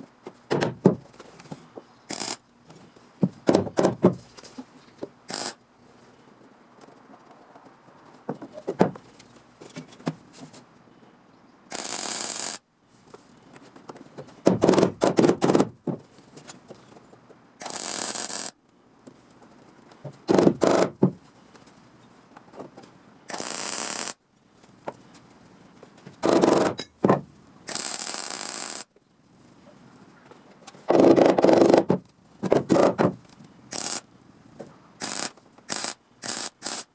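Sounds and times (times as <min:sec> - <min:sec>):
welding crackling: 0:02.1 - 0:02.4, 0:05.3 - 0:05.6, 0:11.7 - 0:12.6, 0:17.6 - 0:18.6, 0:23.3 - 0:24.2, 0:27.7 - 0:28.9, 0:33.7 - 0:34.0, 0:35.0 - 0:36.9
steady hissing: 0:35.0 - 0:36.9.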